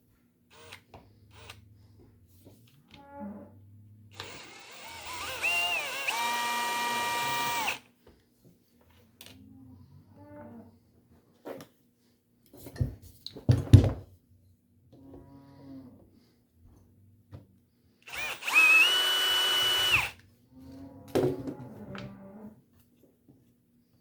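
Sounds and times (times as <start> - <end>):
electric drill whining: 0.5 - 1.6, 4.2 - 7.8, 18.1 - 20.2
knocks of drill handling: 18.1 - 20.1.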